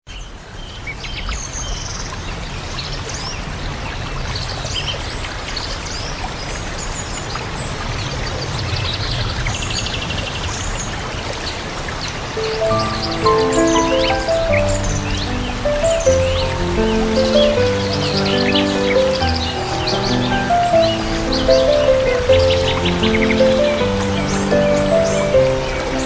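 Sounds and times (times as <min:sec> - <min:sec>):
flowing water: 0:02.1 - 0:26.0
birds chirping: 0:12.4 - 0:26.0.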